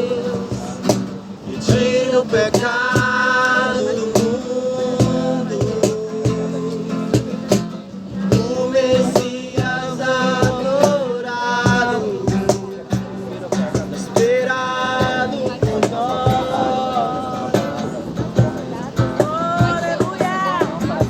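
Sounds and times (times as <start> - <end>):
man singing: 0.0 - 21.0.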